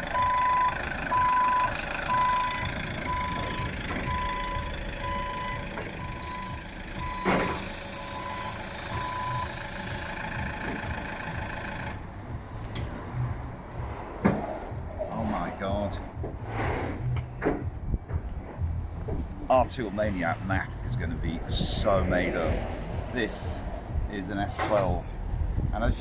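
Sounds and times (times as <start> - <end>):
truck reversing alarm beeping: 0.0 - 12.4
truck engine idling: 0.0 - 26.0.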